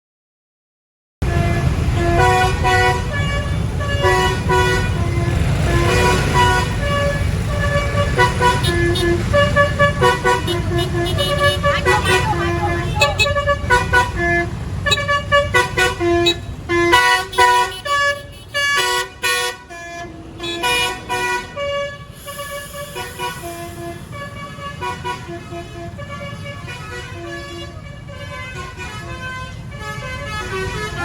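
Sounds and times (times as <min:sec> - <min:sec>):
low engine rumble: 0:01.2 - 0:17.0
musical air horn melody: 0:01.2 - 0:31.0.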